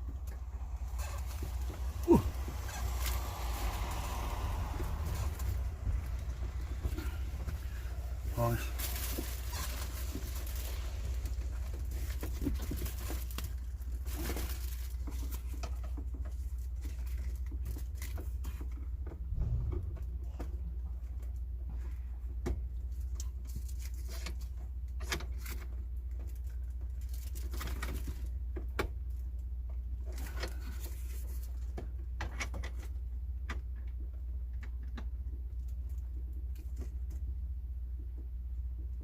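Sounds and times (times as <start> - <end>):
steady low hum: 0.0 - 13.5, 16.4 - 23.3.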